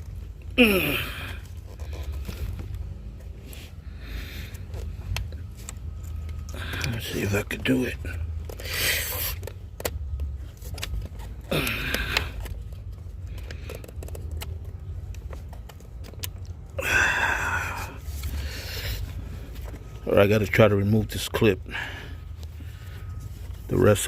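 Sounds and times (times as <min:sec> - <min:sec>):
person grunting with effort: 0:00.5 - 0:01.4, 0:11.5 - 0:12.4, 0:16.8 - 0:18.0
heavy breathing: 0:03.4 - 0:05.2, 0:06.4 - 0:07.0, 0:11.4 - 0:14.0, 0:16.8 - 0:20.0, 0:21.6 - 0:23.5.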